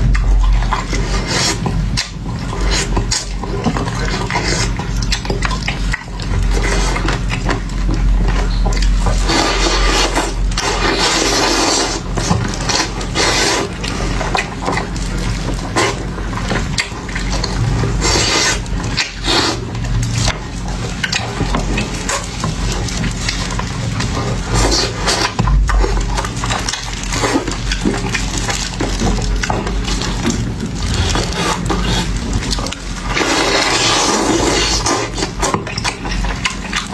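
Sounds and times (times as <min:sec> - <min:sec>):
chewing and crunching: 0:00.0 - 0:36.9.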